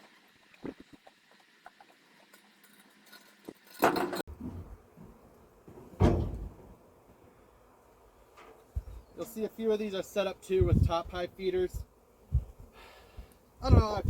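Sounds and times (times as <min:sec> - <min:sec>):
deep thump: 0:06.0 - 0:06.7.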